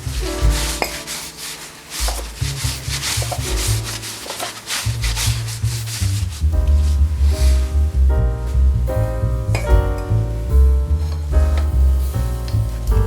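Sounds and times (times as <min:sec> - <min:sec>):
rubbing strokes: 0:00.0 - 0:08.7
background music with bass: 0:00.0 - 0:13.0.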